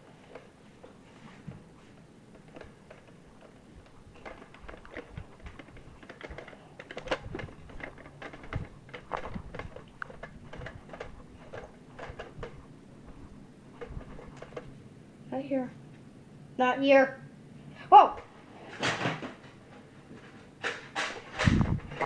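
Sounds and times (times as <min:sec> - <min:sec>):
clicks and rustles: 0:00.0 - 0:14.8.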